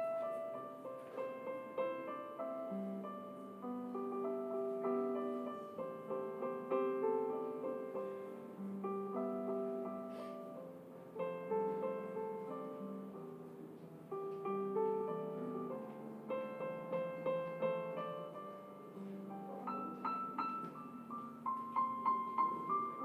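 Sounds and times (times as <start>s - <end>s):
gentle solo piano: 0.0s - 23.0s.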